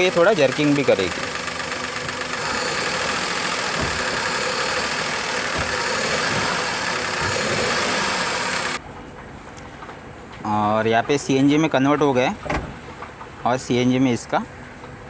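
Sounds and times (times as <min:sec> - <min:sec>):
car engine accelerating: 0:00.0 - 0:08.8
engine misfire thumps: 0:02.0 - 0:08.8.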